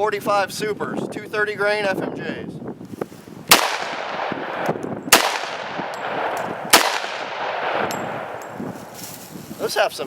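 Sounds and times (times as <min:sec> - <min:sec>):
pistol shots with echo: 0:03.5 - 0:08.6.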